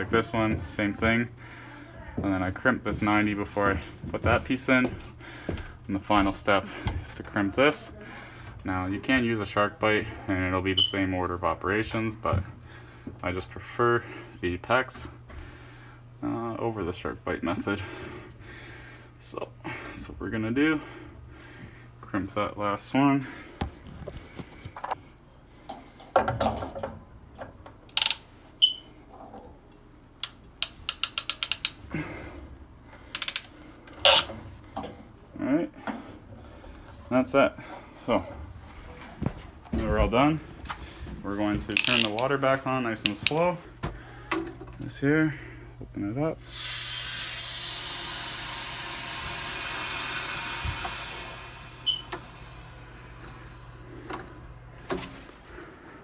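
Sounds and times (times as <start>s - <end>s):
ratcheting crimp tool clicks: 27.9s - 28.2s, 30.2s - 31.8s, 33.2s - 33.5s, 34.1s - 34.3s, 41.7s - 42.3s, 43.1s - 43.4s
water hissing through valve: 34.1s - 34.3s, 46.4s - 53.4s.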